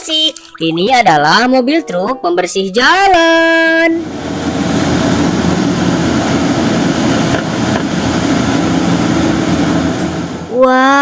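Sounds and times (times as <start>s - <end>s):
engine hum: 4.0s - 10.6s
loud rushing hiss: 4.0s - 10.6s.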